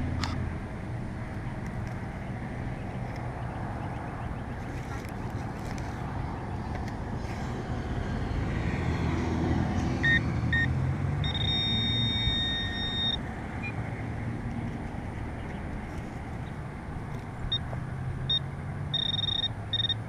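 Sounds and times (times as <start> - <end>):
passing vehicle rumble: 0.0 - 20.0
metal detector beeps: 10.0 - 13.8, 18.3 - 20.0.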